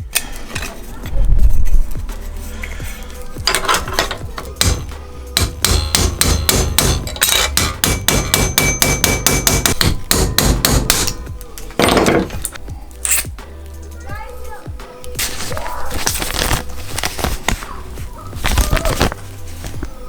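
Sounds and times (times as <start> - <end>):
rustling scrape: 0.2 - 4.4, 15.1 - 20.0
hammer tapping on metal: 3.5 - 12.6.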